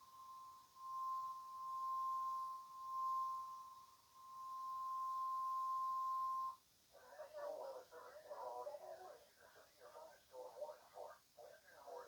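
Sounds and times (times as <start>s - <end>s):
steady high alarm tone: 0.0s - 6.6s.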